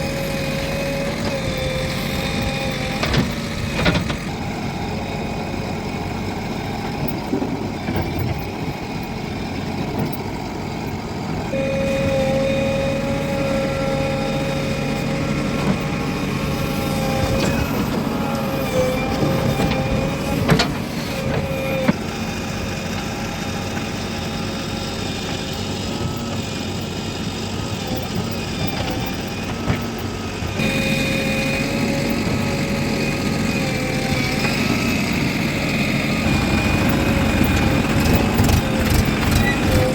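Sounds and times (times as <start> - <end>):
diesel engine running under load: 0.0 - 39.9
steady high whine: 30.6 - 39.9.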